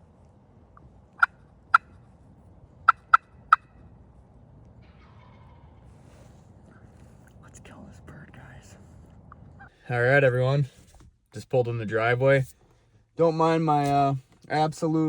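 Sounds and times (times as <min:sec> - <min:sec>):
turkey clucks: 0:01.2 - 0:02.0, 0:02.9 - 0:03.7, 0:04.8 - 0:06.2.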